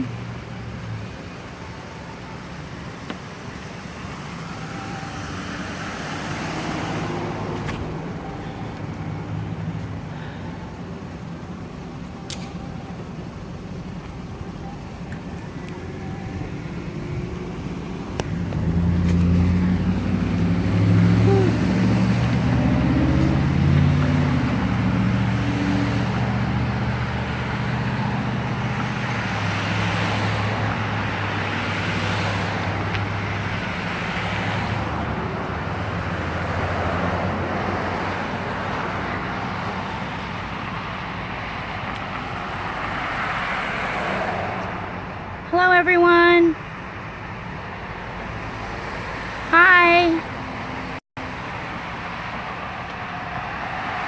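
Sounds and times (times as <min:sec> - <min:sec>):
low engine drone: 0:00.0 - 0:25.5
cars passing with tyre noise: 0:00.0 - 0:54.0.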